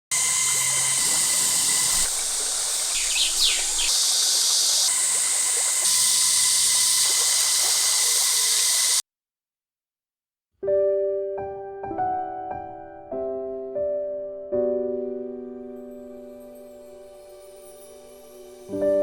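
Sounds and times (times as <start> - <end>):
cicadas droning: 0.2 - 9.0
bird chirping: 0.9 - 4.9.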